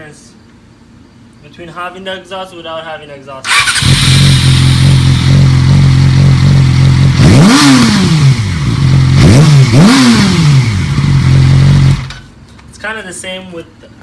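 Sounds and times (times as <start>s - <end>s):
motorcycle engine idling: 3.5s - 7.3s, 10.5s - 12.3s.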